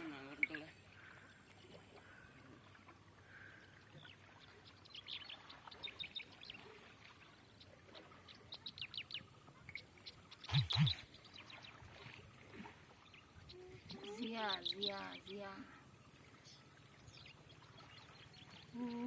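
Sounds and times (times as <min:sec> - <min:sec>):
small birds chirping: 0:03.3 - 0:12.2, 0:13.0 - 0:19.0.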